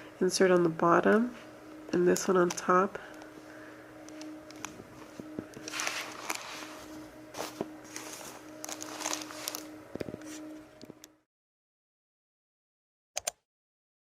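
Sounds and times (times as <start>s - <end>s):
faint steady hum: 0.0s - 11.2s
cloth rustling: 3.2s - 10.7s.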